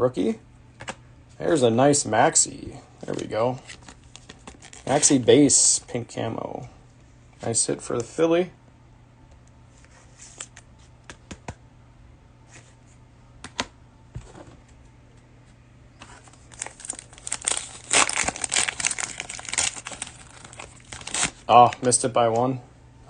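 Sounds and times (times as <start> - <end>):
plastic wrapper crinkling and tearing: 3.2 - 5.2, 16.2 - 22.0.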